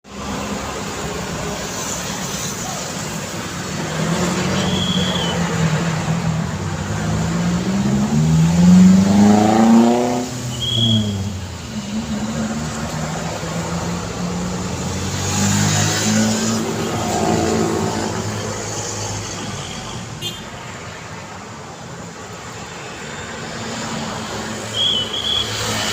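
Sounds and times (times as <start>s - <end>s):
vehicles passing close by: 0.0s - 25.9s
engine accelerating: 5.7s - 18.2s.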